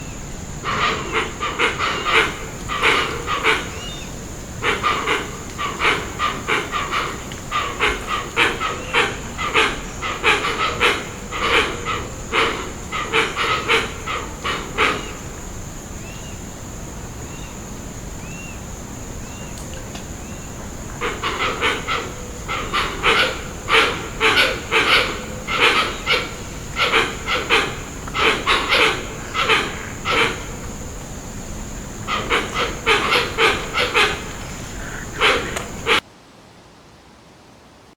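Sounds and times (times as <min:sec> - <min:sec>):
bird giving harsh rasping calls: 0:00.6 - 0:15.4, 0:21.0 - 0:31.0, 0:31.7 - 0:36.0.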